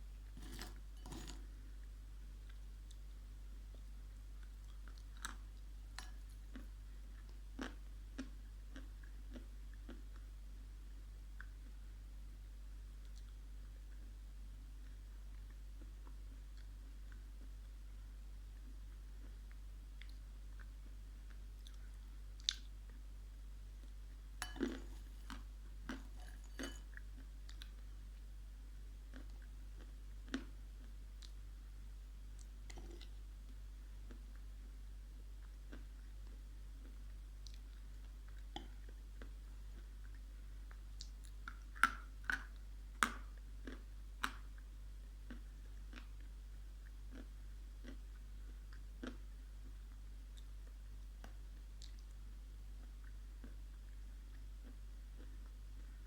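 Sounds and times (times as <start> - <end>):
low electrical hum: 0.0 - 56.0
dried clay crunching when chewed: 0.3 - 1.5.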